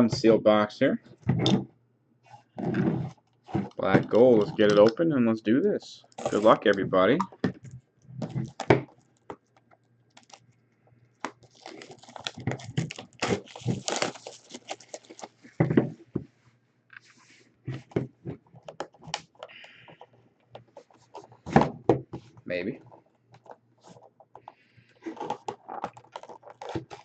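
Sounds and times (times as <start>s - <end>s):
shrink-wrap tearing and crinkling: 10.1s - 10.4s, 11.2s - 15.5s, 25.0s - 27.0s.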